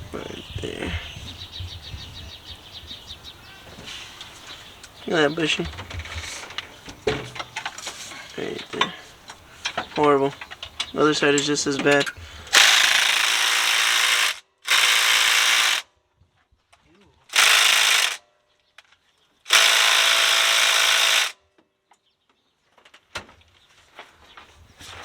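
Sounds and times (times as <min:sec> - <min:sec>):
handheld power tool running: 0:04.2 - 0:10.9, 0:12.0 - 0:15.9, 0:17.3 - 0:18.2, 0:19.5 - 0:21.4.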